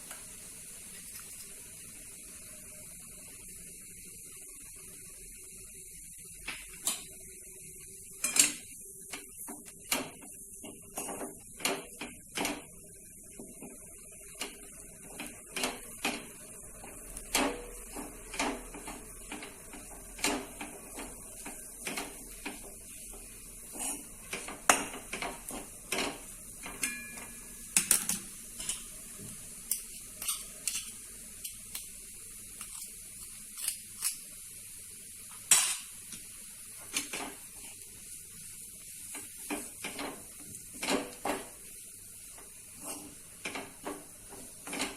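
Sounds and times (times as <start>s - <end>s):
spatula scraping a wok: 17.5s - 26.2s, 42.7s - 44.9s
faint hiss: 34.3s - 44.6s.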